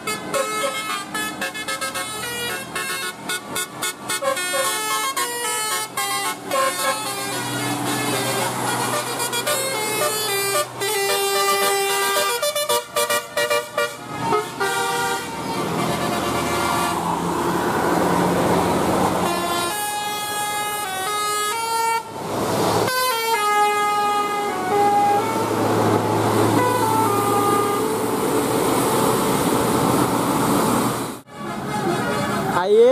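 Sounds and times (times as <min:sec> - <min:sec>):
bus air horns playing a tune: 0:00.0 - 0:17.2, 0:19.0 - 0:22.2, 0:22.8 - 0:29.8, 0:31.1 - 0:32.9
engine and road noise: 0:00.0 - 0:32.9
loud rushing noise: 0:25.1 - 0:31.2.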